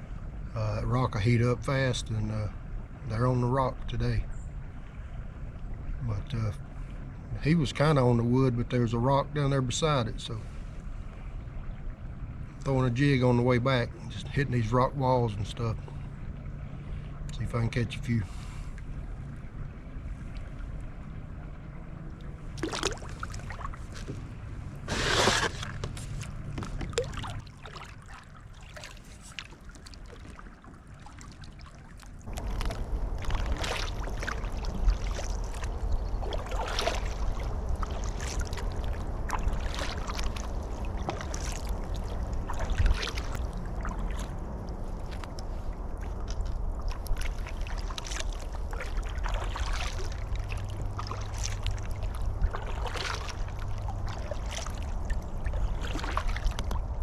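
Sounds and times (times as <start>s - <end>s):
knocks and small splashes: 0.0s - 57.0s
water sloshing around a kayak: 0.0s - 57.0s
low rumble: 32.2s - 57.0s.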